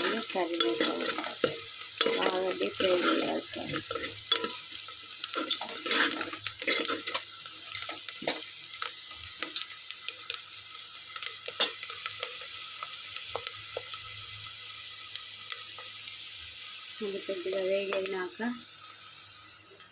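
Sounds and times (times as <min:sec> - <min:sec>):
spoon scraping a pan: 0:00.0 - 0:08.5, 0:11.4 - 0:12.4
food sizzling in hot oil: 0:00.0 - 0:19.9.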